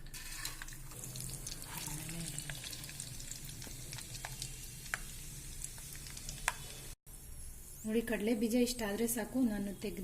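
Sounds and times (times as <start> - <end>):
peanuts sizzling in hot oil: 0.0 - 7.0.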